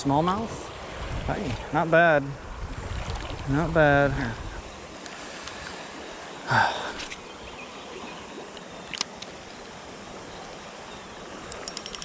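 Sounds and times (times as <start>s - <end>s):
steady outdoor hiss: 0.0s - 12.0s
sharp click: 11.5s - 12.0s.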